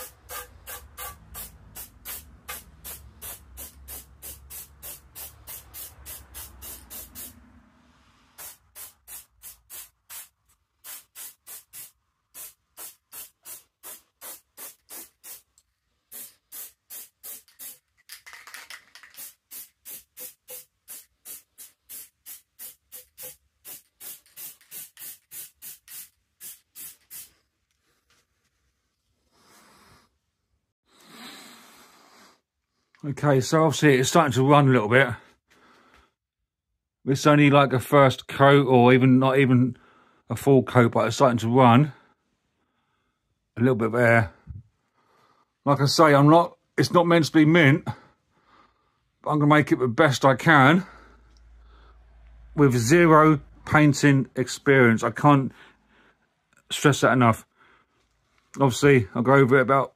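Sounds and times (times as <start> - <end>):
spray paint can spraying: 0.0 - 7.4, 8.4 - 27.4.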